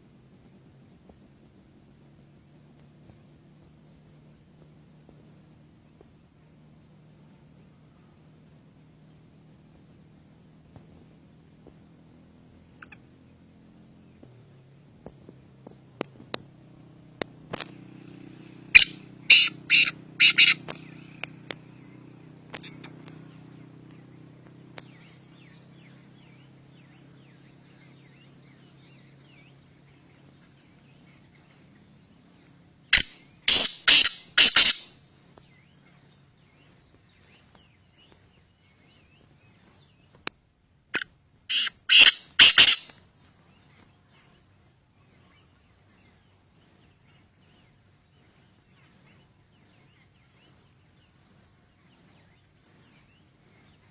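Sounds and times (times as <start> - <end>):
bird calling sharp rapid notes: 18.7 - 21.2, 32.9 - 34.9, 41.0 - 42.9.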